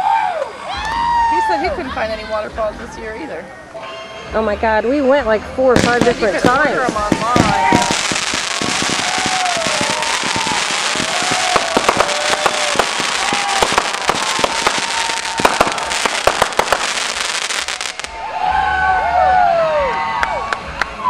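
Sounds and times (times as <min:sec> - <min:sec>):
fireworks bangs: 0:05.7 - 0:18.2
fireworks crackling: 0:05.7 - 0:18.2.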